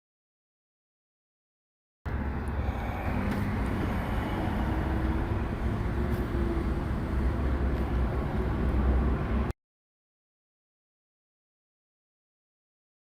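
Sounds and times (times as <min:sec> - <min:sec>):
engine and road rumble: 0:02.1 - 0:09.6.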